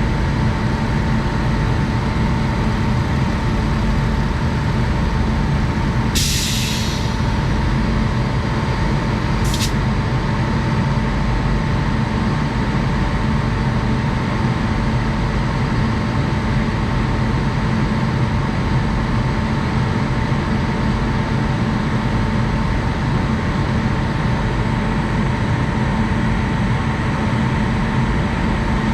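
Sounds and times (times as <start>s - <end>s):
electric locomotive whirring hum: 0.0s - 28.9s
hiss of air: 6.2s - 7.6s, 9.4s - 9.8s.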